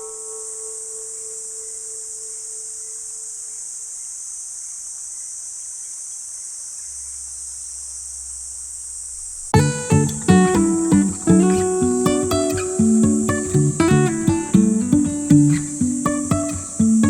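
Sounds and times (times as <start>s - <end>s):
ringing bell-like tone: 0.0s - 3.3s
insects chorus: 0.0s - 17.0s.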